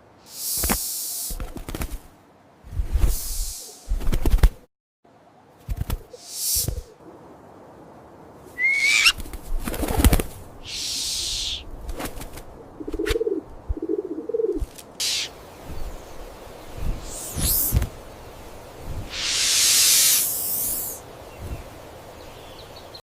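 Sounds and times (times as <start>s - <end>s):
bird wings flapping: 0.4s - 4.7s, 5.5s - 6.9s, 8.6s - 21.8s
low cooing calls: 8.5s - 9.2s, 10.6s - 11.7s, 12.6s - 17.9s
bird chirp: 8.6s - 9.2s, 13.2s - 23.0s.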